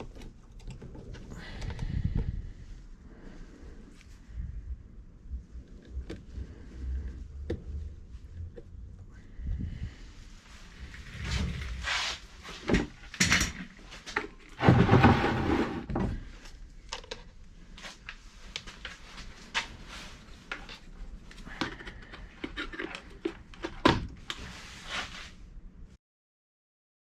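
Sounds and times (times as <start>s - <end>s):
knocks and clatter of objects: 12.6s - 16.2s.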